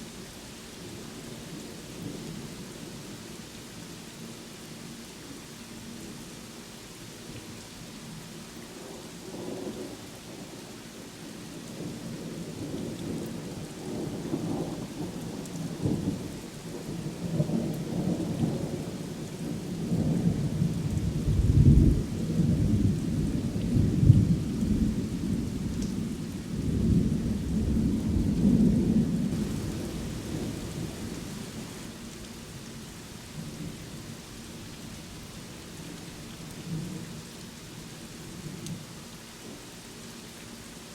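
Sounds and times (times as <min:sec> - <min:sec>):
steady rain falling: 0:00.0 - 0:40.9
thunder rolling and cracking: 0:26.7 - 0:31.8.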